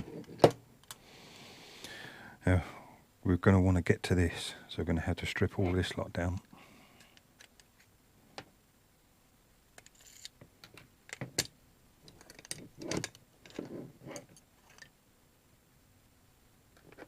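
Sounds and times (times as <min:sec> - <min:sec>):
small clicks and taps of parts: 0:00.2 - 0:01.0, 0:07.0 - 0:08.5, 0:09.8 - 0:13.6.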